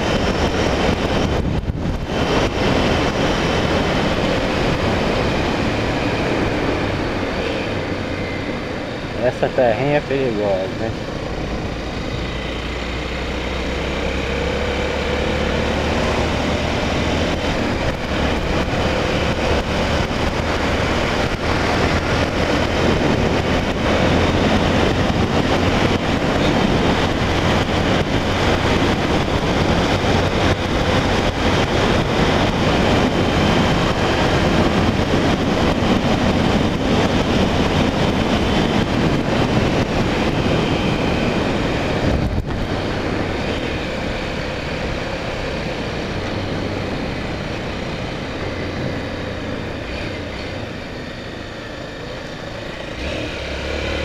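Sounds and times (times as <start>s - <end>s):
motorcycle engine running: 0.0s - 54.0s
wind rushing over microphone: 0.0s - 54.0s.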